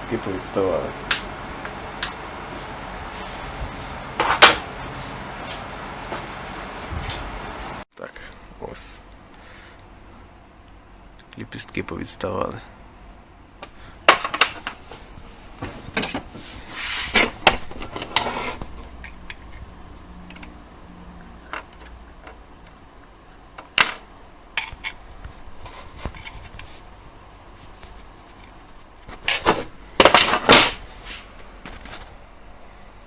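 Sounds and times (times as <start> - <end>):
brief rustle: 0.0 - 7.8.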